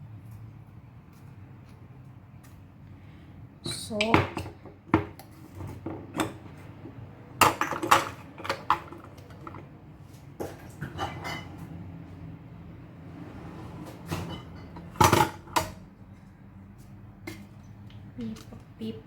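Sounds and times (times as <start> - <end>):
kitchen utensils clinking: 7.4 - 9.7, 10.4 - 11.8, 13.8 - 15.8.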